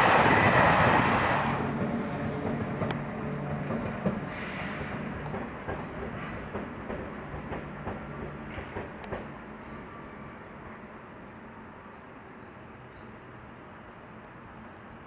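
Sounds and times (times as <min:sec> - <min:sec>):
train wheels clicking over rail joints: 0:01.7 - 0:09.5.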